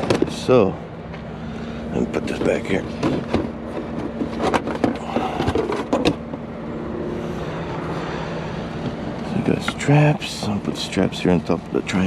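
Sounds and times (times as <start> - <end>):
low hum: 0.0 - 12.0
objects knocking and clattering: 2.9 - 6.4
steady tones: 5.8 - 12.0.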